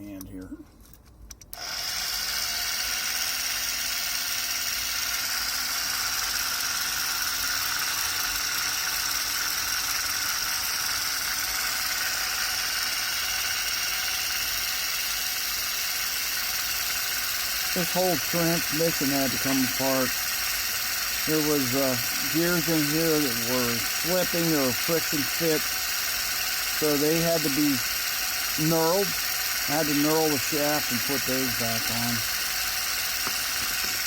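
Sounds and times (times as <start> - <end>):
toy motor whirring whine: 0.7 - 34.0.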